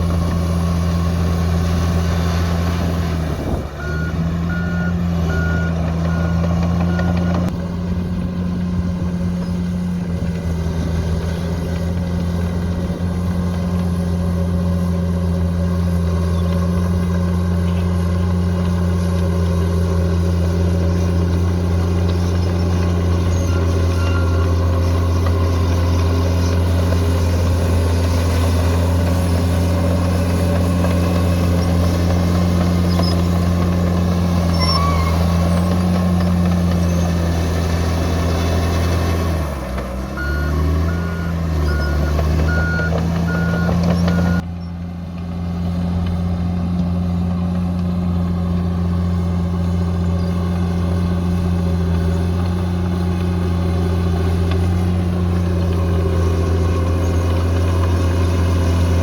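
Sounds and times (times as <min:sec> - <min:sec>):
bulldozer diesel engine: 0:00.0 - 0:59.0
reversing alarm beeping: 0:03.8 - 0:07.5, 0:40.1 - 0:44.4.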